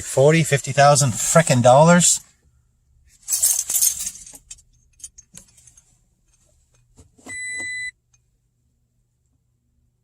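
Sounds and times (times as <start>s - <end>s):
keys clicking and rattling: 3.2s - 5.9s
short electronic warning beep: 7.3s - 7.9s.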